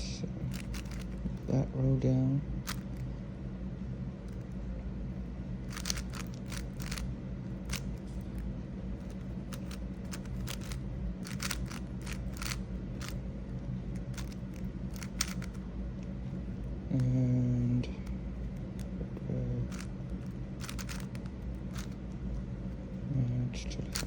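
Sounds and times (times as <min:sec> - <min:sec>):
low background hum: 0:00.0 - 0:24.0
plastic cube turning clicks: 0:00.6 - 0:01.2, 0:05.7 - 0:07.0, 0:09.0 - 0:13.2, 0:14.1 - 0:15.6, 0:20.6 - 0:22.0.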